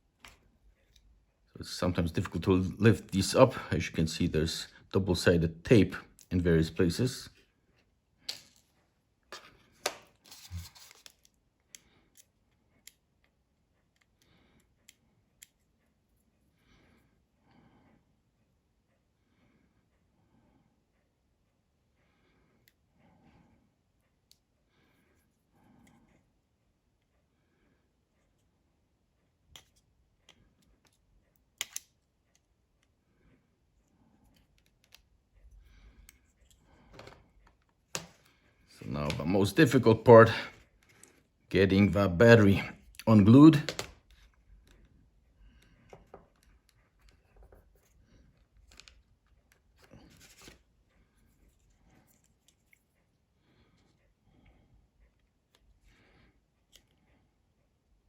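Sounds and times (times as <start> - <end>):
small hand tools clicking and scraping: 9.3 - 11.3
hand tools clicking on phone: 29.5 - 32.9.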